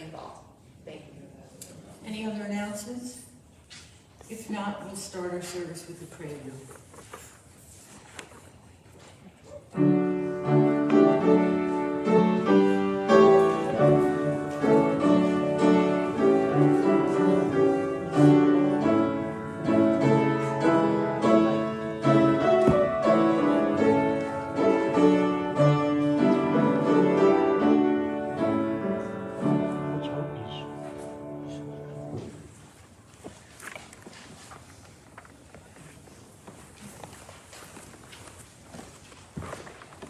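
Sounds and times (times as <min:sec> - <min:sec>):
piano playing a prelude: 0:09.7 - 0:32.5.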